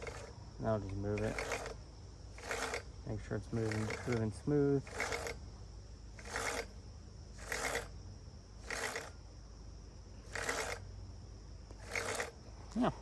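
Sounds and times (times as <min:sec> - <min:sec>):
chainsaw chain rattling on bar: 0:00.0 - 0:05.4, 0:06.2 - 0:08.0, 0:08.6 - 0:09.2, 0:10.2 - 0:10.8, 0:11.8 - 0:12.4.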